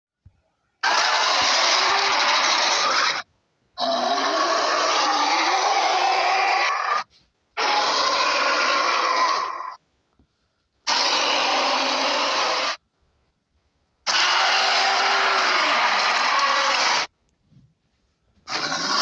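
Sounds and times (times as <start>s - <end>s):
processed monster growls: 3.8s - 7.0s, 10.9s - 12.8s, 14.1s - 17.1s, 18.5s - 19.0s.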